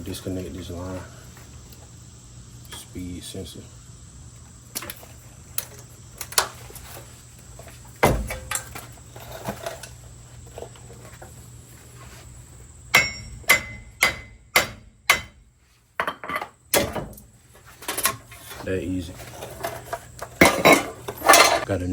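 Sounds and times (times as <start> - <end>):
hammer striking metal: 12.9 - 17.1.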